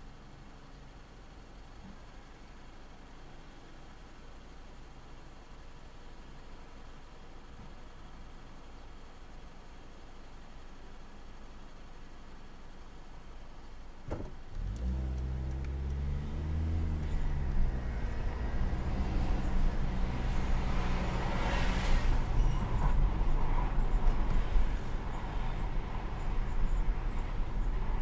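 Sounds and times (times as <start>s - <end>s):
car engine drone accelerating: 14.5s - 28.0s.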